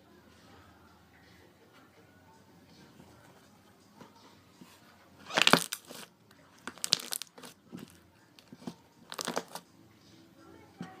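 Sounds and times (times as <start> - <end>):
slime crackling by hand: 5.2 - 9.6.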